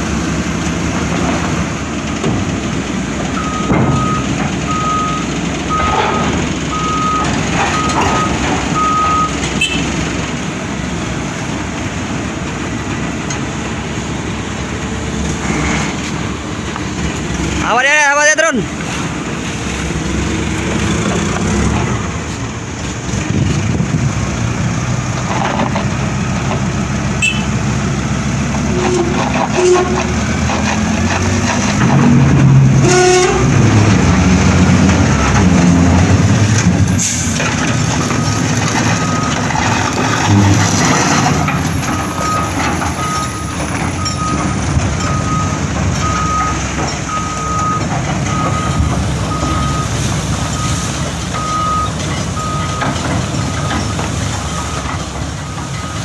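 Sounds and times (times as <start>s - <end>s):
heavy diesel engines under load: 0.0s - 56.0s
reversing alarm beeping: 3.4s - 9.8s, 37.5s - 39.7s, 41.4s - 56.0s.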